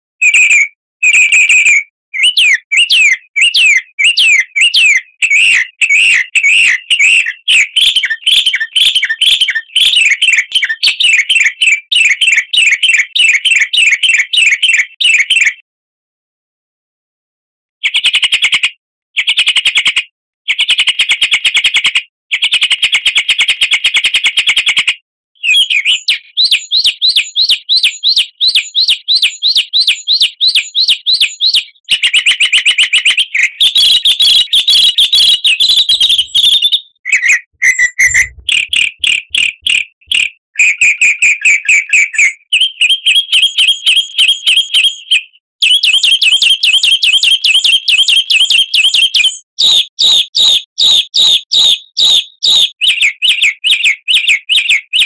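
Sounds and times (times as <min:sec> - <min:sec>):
songbird chattering trills: 0:33.6 - 0:40.3.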